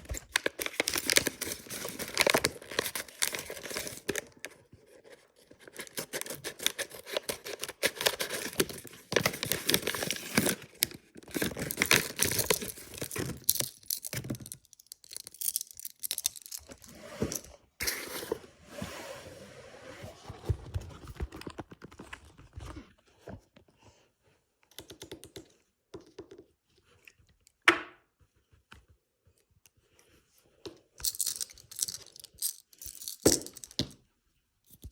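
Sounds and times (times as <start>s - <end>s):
paper packaging crinkling and tearing: 0.0s - 4.5s, 5.4s - 14.0s.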